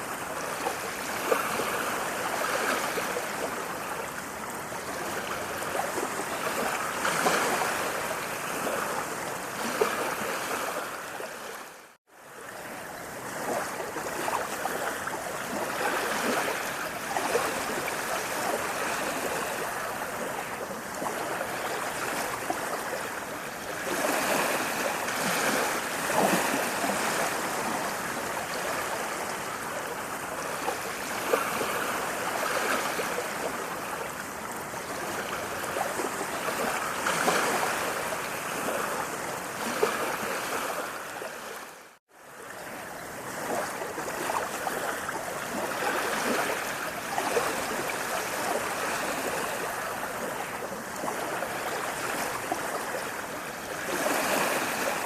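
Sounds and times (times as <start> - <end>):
water rushing: 0.0 - 55.0.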